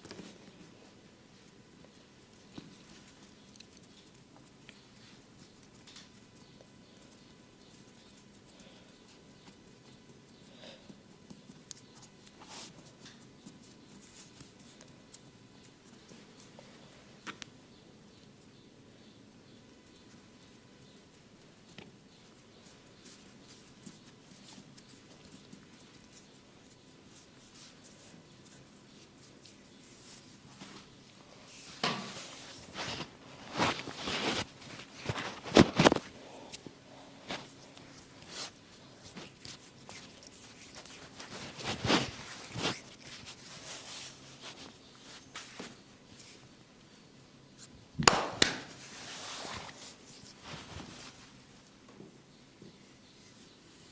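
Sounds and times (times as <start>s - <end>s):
hands rubbing skin: 22.2s - 46.4s, 47.6s - 51.4s
sharp contact sounds: 31.5s - 36.6s, 37.2s - 46.4s, 48.7s - 51.3s.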